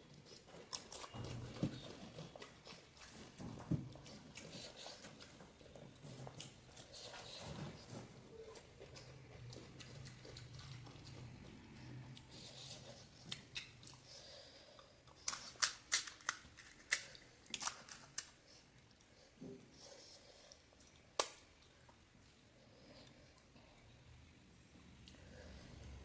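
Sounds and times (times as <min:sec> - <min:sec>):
crisp puris crunching: 0:15.0 - 0:18.6.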